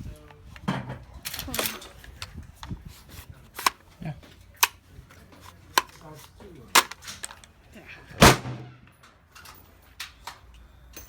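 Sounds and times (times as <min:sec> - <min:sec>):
gunshots: 0:08.2 - 0:08.8
loud gunshot with echoing tail: 0:08.2 - 0:08.8.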